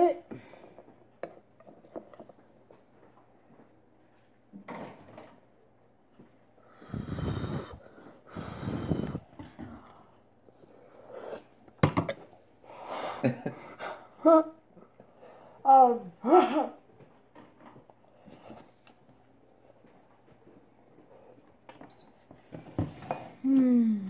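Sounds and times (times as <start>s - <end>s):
person blowing on food: 6.8s - 9.3s.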